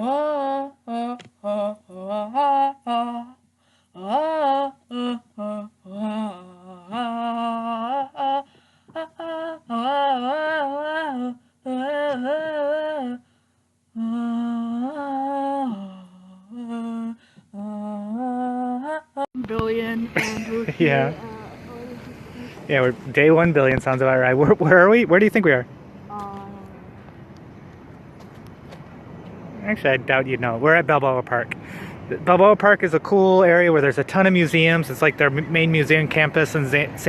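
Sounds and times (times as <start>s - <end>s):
person humming: 4.0s - 8.4s, 13.9s - 19.0s, 20.2s - 22.7s, 26.1s - 27.0s.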